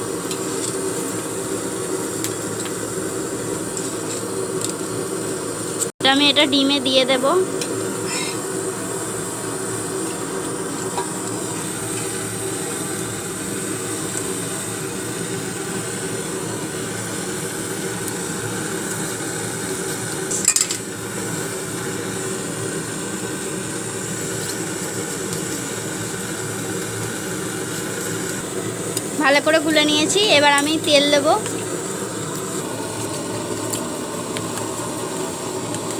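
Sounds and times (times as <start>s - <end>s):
steady background hum: 0.0s - 35.9s.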